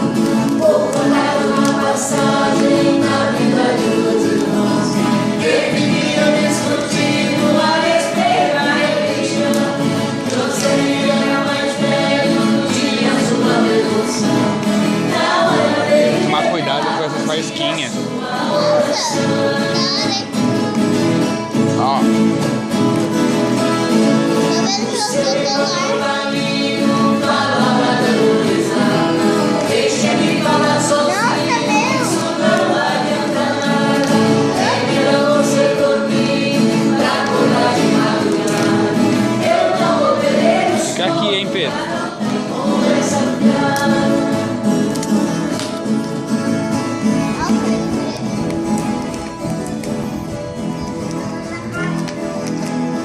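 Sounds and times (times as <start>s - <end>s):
group singing together: 0.0s - 21.5s, 22.3s - 47.9s
guitar accompaniment: 0.0s - 53.0s.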